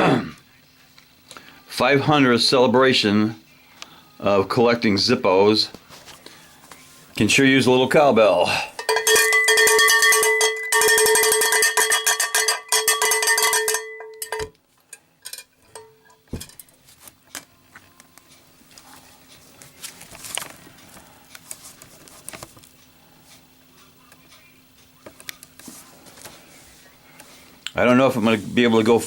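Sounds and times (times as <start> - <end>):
cowbell struck rapidly: 8.8 - 14.4.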